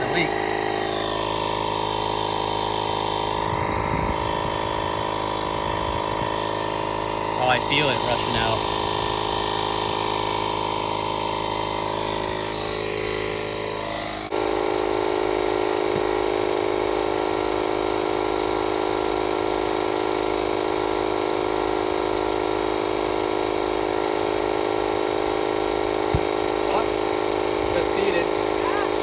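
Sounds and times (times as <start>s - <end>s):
tire inflator pump whining: 0.0s - 29.0s.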